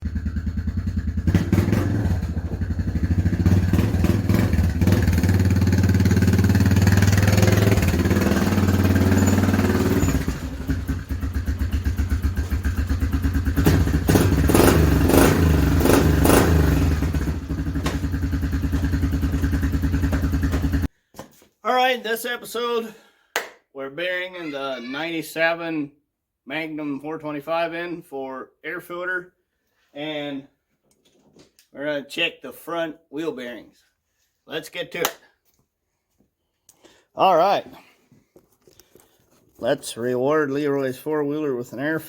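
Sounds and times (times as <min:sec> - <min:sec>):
atv engine revving: 0:00.0 - 0:20.9.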